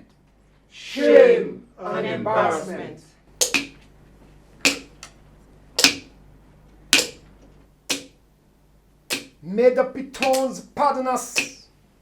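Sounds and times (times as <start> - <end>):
sharp percussive strikes: 3.4 - 3.8, 4.6 - 5.1, 5.8 - 6.2, 6.9 - 7.2, 7.9 - 8.2, 9.1 - 9.4, 10.2 - 10.6, 11.3 - 11.6.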